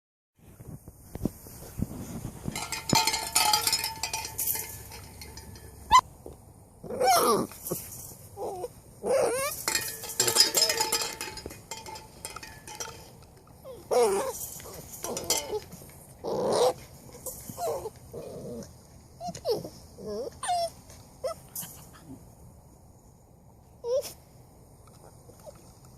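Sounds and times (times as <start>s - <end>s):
light metallic clinking: 2.4s - 6.0s, 9.4s - 16.0s
puppies yipping and growling: 2.6s - 6.1s, 6.8s - 12.0s, 13.6s - 22.1s.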